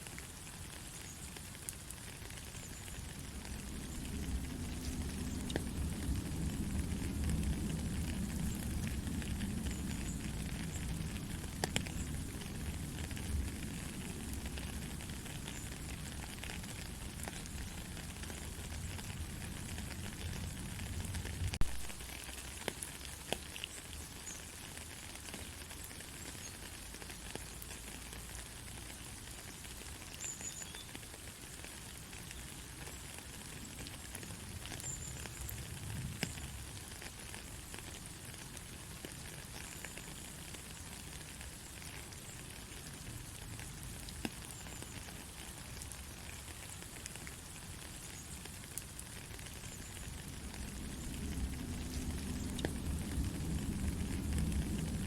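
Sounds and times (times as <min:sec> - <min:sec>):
soft rain falling: 0:00.0 - 0:55.0
low rumble: 0:03.2 - 0:15.5.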